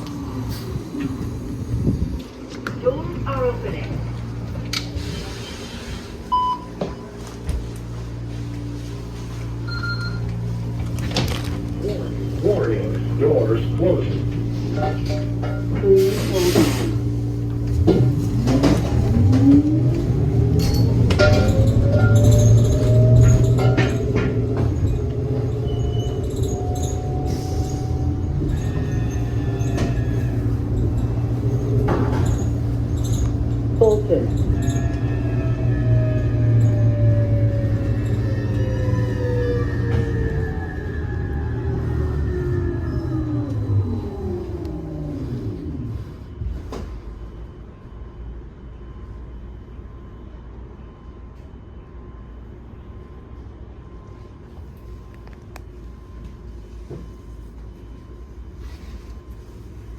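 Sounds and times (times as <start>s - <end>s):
steady low rumble: 0.0s - 16.3s
trolleybus motor hum: 0.0s - 59.9s
faint whine tones: 20.4s - 59.9s.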